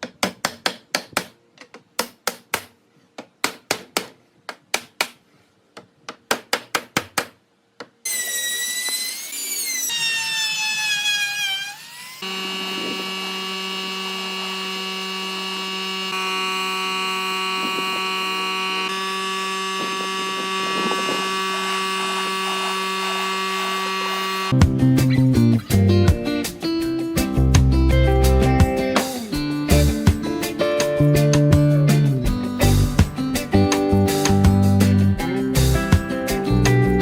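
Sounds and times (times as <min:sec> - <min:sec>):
power tool motor running: 0:08.1 - 0:24.6.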